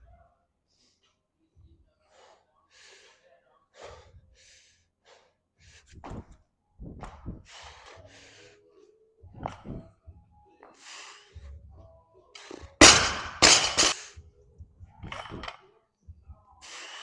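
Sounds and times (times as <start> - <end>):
person breathing hard: 2.0 - 6.0, 7.3 - 8.6.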